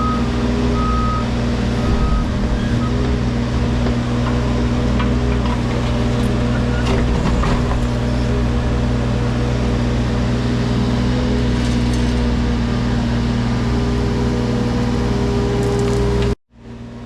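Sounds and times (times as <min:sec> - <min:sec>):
excavator diesel engine running: 0:00.0 - 0:16.4.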